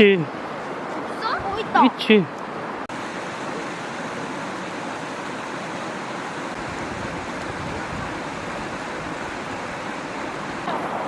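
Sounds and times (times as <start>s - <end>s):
stream rushing over rocks: 0.1s - 11.0s.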